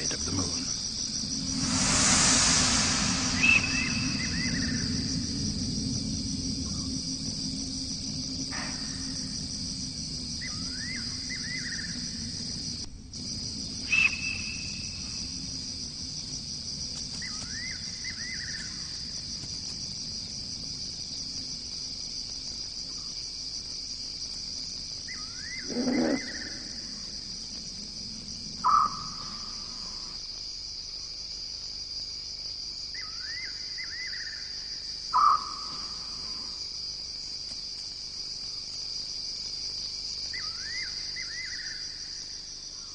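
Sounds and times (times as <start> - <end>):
insects trilling: 0.0 - 42.9
sharp animal calls: 25.6 - 26.8.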